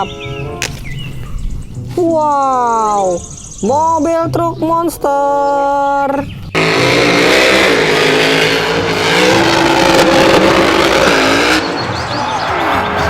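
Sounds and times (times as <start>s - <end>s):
tyres screeching: 6.1s - 12.8s
car engine revving: 6.6s - 13.0s.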